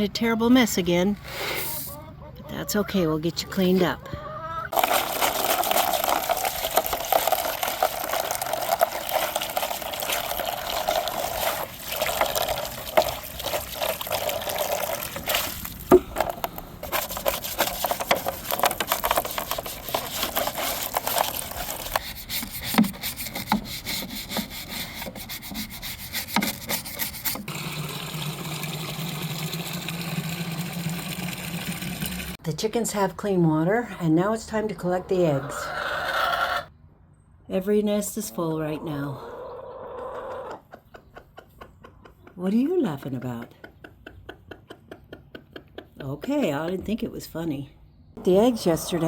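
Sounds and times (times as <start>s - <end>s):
quick scraping strokes: 1.2s - 2.0s
running and splashing water: 4.7s - 16.0s, 16.8s - 23.4s, 26.5s - 32.4s
scrubbing and rubbing: 4.7s - 27.5s.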